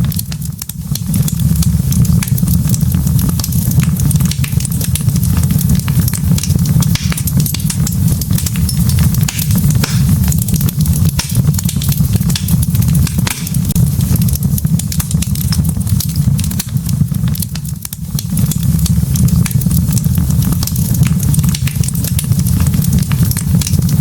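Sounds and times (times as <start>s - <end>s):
fire flames rumbling: 0.0s - 24.0s
logs crackling and popping: 0.0s - 24.0s.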